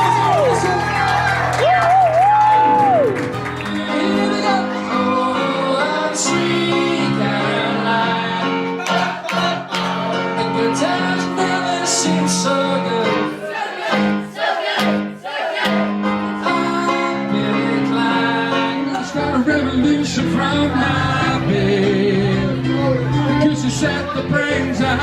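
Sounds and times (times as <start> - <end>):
instrumental backing: 0.0 - 25.0
live pop song with singing: 3.6 - 13.5, 16.4 - 25.0.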